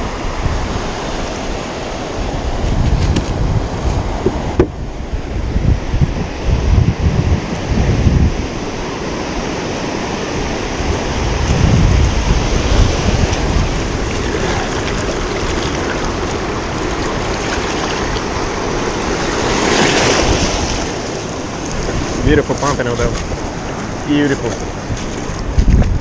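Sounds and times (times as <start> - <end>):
ocean surf washing on beach: 0.0 - 26.0
wind buffeting microphone: 0.0 - 26.0.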